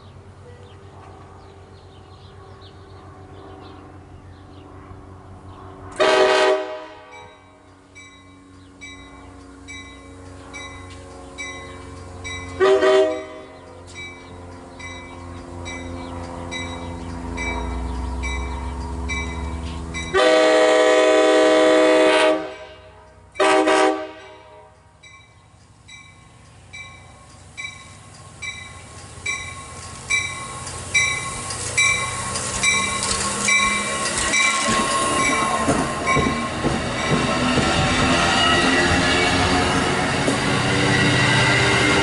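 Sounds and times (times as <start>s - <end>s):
engine low rumble: 0.0s - 6.0s, 6.9s - 23.4s
train horn: 6.0s - 7.6s, 12.6s - 13.6s, 20.1s - 24.8s
train wheels clattering: 7.6s - 20.2s, 24.8s - 42.0s.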